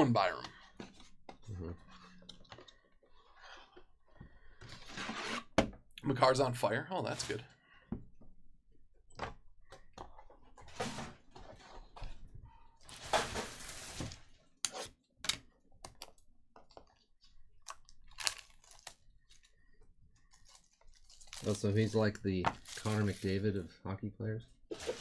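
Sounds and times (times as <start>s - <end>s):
packaging rustle: 20.3s - 23.4s
plastic packaging crinkling: 20.3s - 23.5s.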